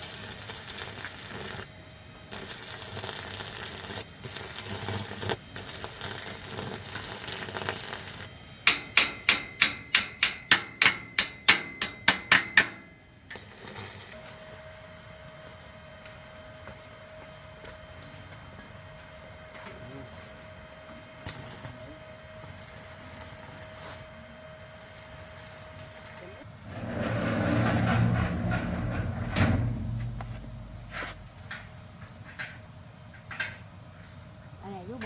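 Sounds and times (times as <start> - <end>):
hammer striking metal: 8.7 - 13.0, 29.3 - 31.7
rough scraping: 26.4 - 31.9.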